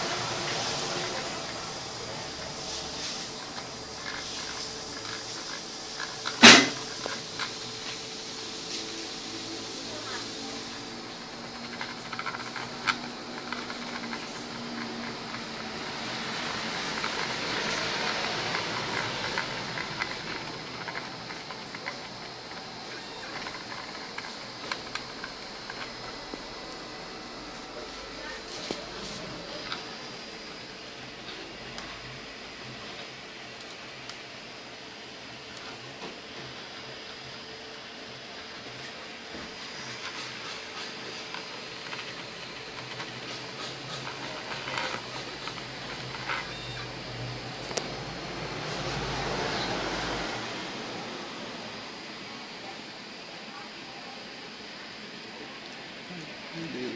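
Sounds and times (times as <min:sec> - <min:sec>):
cnc machine motor whir: 0:00.0 - 0:53.2
faint constant tone: 0:00.0 - 0:56.9
small clicks and ticks: 0:00.4 - 0:26.9, 0:38.3 - 0:50.0.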